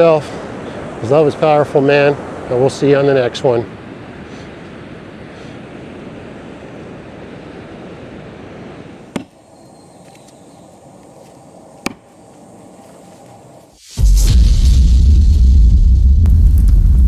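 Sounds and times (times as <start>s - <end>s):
ocean surf: 0.0s - 13.8s
faint hiss: 0.0s - 15.0s
wind: 0.0s - 17.0s.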